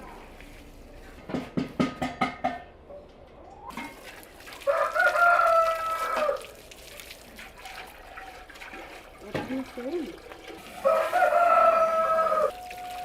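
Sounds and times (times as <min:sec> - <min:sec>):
rooster crowing: 0:04.6 - 0:06.5, 0:10.8 - 0:13.0.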